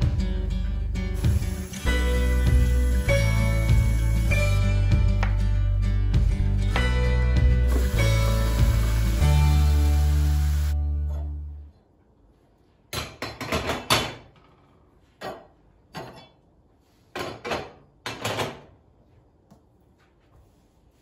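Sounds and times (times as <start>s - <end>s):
intro music: 0.0s - 11.0s
kitchen items knocking and clattering: 12.9s - 14.6s, 17.1s - 18.8s.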